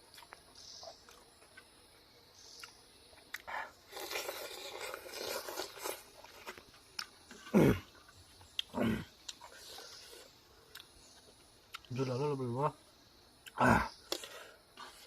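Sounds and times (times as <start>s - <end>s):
crunchy chewing: 0.0s - 1.8s, 2.4s - 12.0s, 13.4s - 15.0s
chewing with wet mouth clicks: 0.1s - 1.7s, 2.5s - 7.4s, 8.0s - 11.0s, 11.7s - 11.9s.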